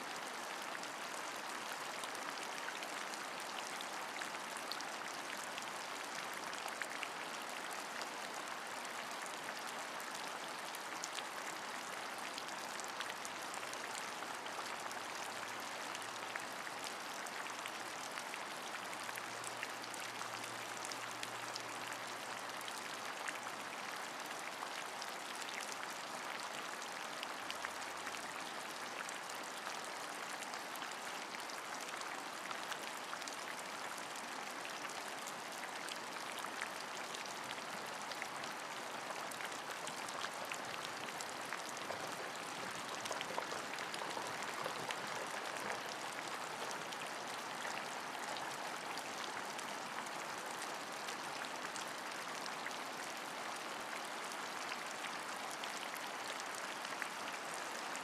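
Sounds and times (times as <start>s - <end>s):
steady rain: 0.0s - 58.0s.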